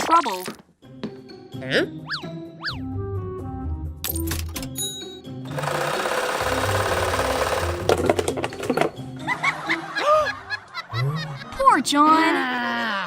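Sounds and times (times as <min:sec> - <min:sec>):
fast mechanical rattle: 0:05.5 - 0:08.9.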